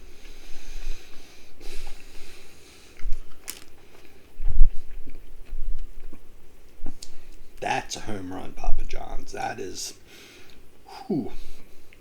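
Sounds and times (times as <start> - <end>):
close-up chewing: 0.0 - 7.6.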